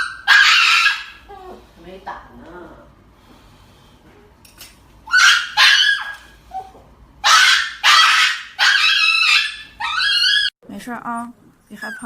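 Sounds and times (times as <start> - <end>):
dog screaming: 0.0 - 1.3, 5.1 - 6.6, 7.2 - 10.6.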